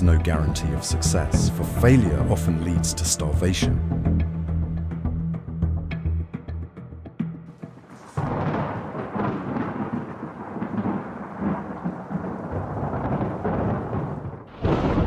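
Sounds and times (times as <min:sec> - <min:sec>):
rolling thunder: 0:08.2 - 0:15.0.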